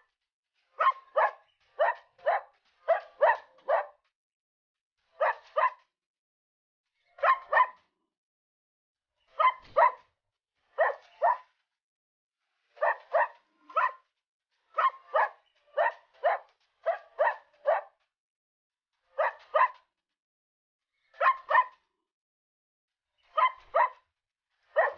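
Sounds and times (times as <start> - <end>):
dog barking: 0.8 - 4.0, 5.2 - 5.9, 7.2 - 7.9, 9.3 - 10.1, 10.7 - 11.5, 12.8 - 14.1, 14.7 - 18.0, 19.1 - 19.8, 21.2 - 21.8, 23.3 - 24.0, 24.7 - 24.9.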